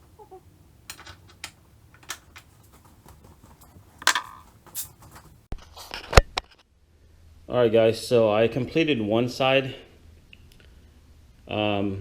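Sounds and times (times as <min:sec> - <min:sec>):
hand tools clicking and tapping: 0:00.0 - 0:05.5.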